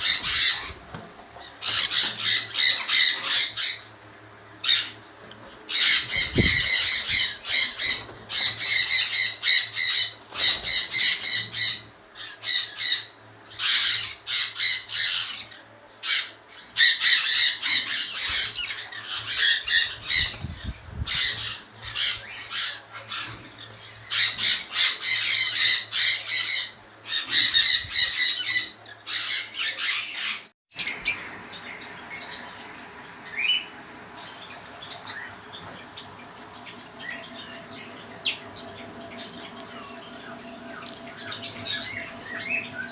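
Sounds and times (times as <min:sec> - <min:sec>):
parrots screeching: 0:00.0 - 0:03.9, 0:04.6 - 0:31.2.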